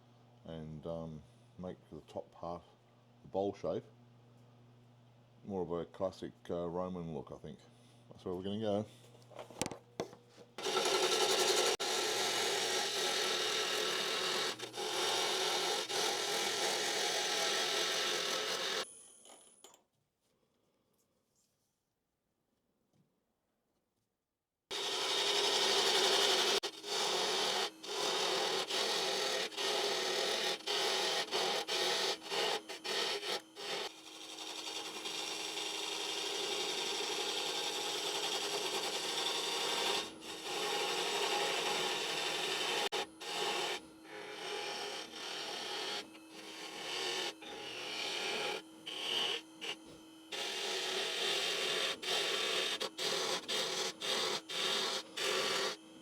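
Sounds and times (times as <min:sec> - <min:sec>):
gouge scraping wood on lathe: 0:10.6 - 0:18.9, 0:24.7 - 0:56.0.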